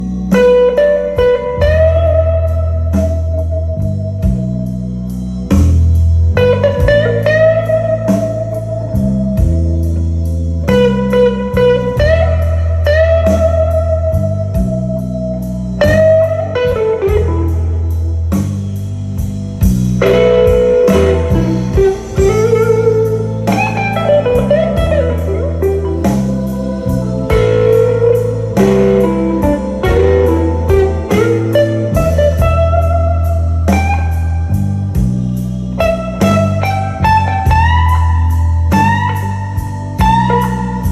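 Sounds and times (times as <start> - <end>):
bending guitar lead: 0.0 - 40.9
repeating bass line: 0.0 - 40.9
steady drum beat: 18.4 - 37.9.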